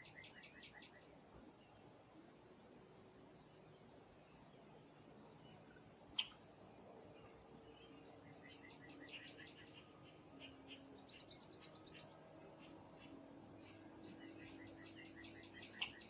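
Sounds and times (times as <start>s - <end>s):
small songbirds calling: 0.0s - 1.9s, 3.4s - 16.0s
rapid high bird chirps: 12.6s - 16.0s.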